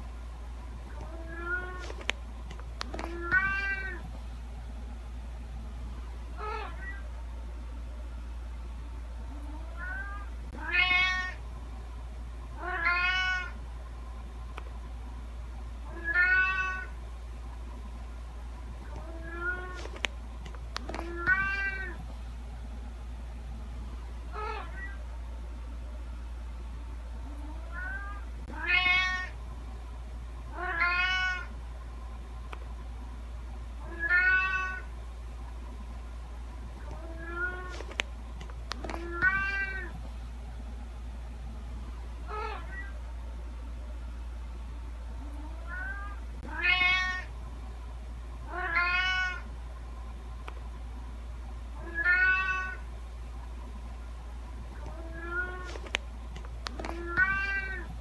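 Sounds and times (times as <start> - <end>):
cat meowing: 1.0 - 1.9, 3.1 - 4.0, 6.4 - 7.0, 9.8 - 11.4, 12.6 - 13.6, 16.0 - 16.9, 21.0 - 22.0, 27.7 - 29.3, 30.6 - 31.5, 33.8 - 34.9, 38.9 - 39.9, 45.7 - 47.3, 48.5 - 49.4, 51.8 - 52.8, 54.9 - 55.7, 56.9 - 57.9.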